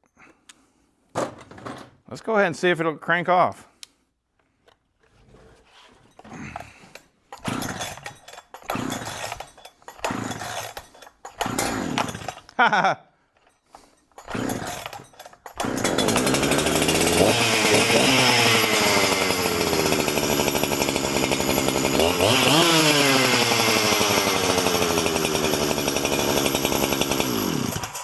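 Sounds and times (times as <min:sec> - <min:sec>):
chainsaw pull cord start: 0:06.1 - 0:12.7, 0:13.4 - 0:28.0
chainsaw engine revving: 0:07.4 - 0:12.5, 0:14.2 - 0:28.0.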